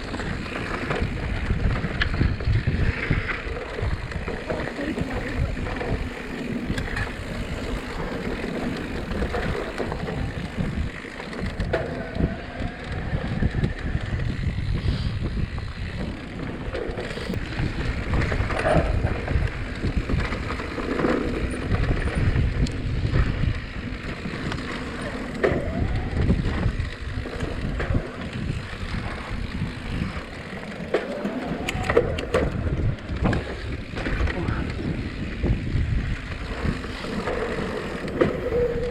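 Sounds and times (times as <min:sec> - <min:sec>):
bike clicks and rattles: 0:00.0 - 0:38.9
bike tyres rumbling on dirt: 0:00.0 - 0:38.9
wind rumble on microphone: 0:00.0 - 0:38.9.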